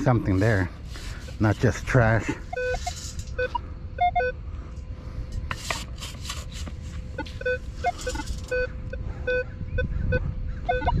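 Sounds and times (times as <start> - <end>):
sand scoop scraping sand: 0.0 - 3.2, 5.5 - 8.4
metal detector short beeps: 2.4 - 4.4, 7.2 - 9.9, 10.7 - 11.0.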